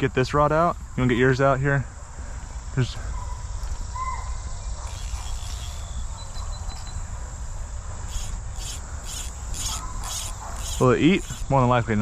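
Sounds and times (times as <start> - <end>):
crickets trilling: 0.0 - 12.0
rapid high chirps: 4.5 - 11.9.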